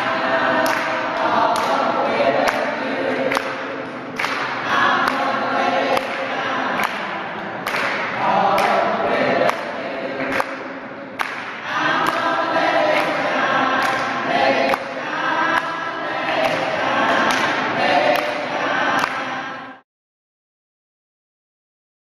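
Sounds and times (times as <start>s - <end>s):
choir singing: 0.0s - 19.8s.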